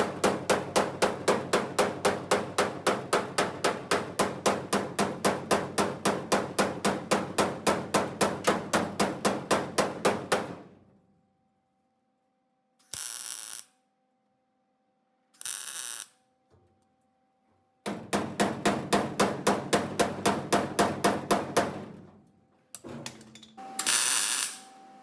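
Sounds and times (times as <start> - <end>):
hammer striking sheet metal: 0.0 - 10.7, 17.9 - 22.1.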